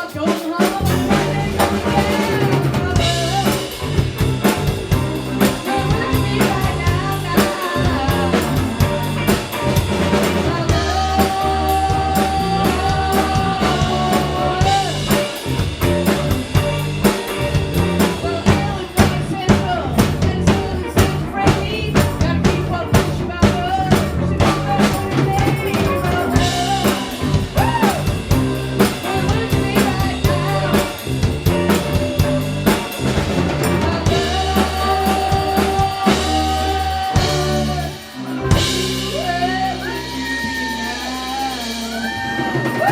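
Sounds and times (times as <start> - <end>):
drum-kit beat with rimshots: 0.0 - 42.9
bass line: 0.6 - 42.9.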